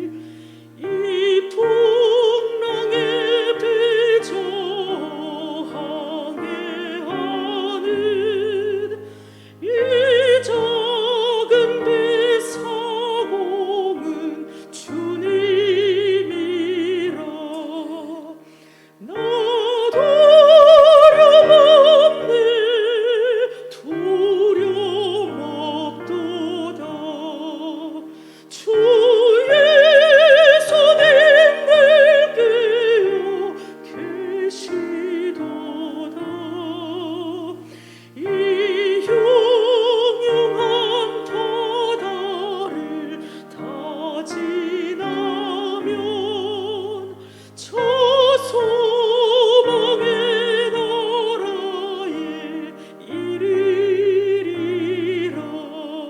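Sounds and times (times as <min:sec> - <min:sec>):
operatic solo singing: 0:00.0 - 0:56.0
piano accompaniment: 0:00.0 - 0:56.0.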